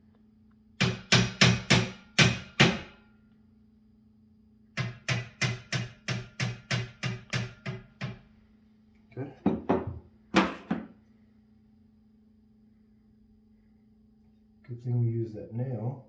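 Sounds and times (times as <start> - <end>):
hammer striking nail into drywall: 0.8 - 3.0, 4.8 - 8.3.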